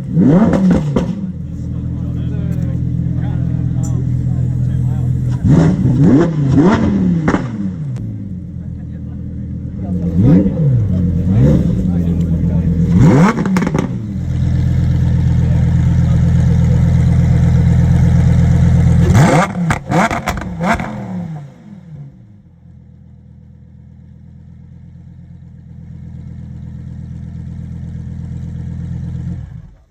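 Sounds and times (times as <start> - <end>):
car engine revving: 0.0 - 23.0
car engine idling: 0.0 - 29.9.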